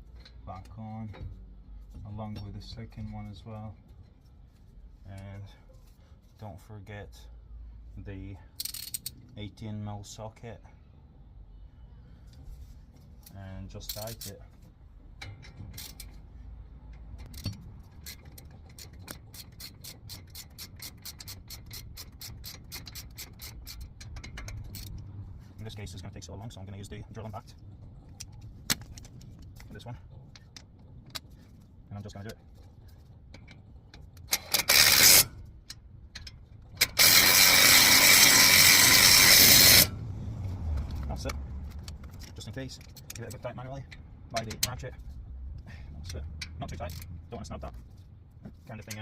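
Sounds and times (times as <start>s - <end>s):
socket ratchet clicking: 8.6s - 9.2s, 17.0s - 25.1s, 34.2s - 39.9s
impact wrench running: 34.3s - 35.4s, 36.8s - 40.0s.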